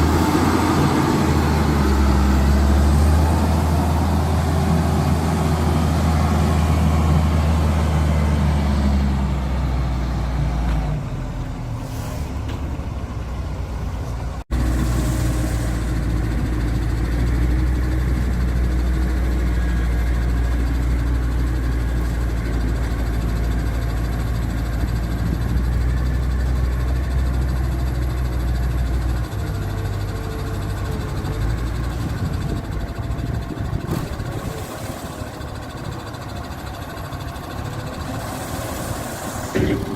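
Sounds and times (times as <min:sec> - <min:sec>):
heavy diesel engine running: 0:00.0 - 0:39.9.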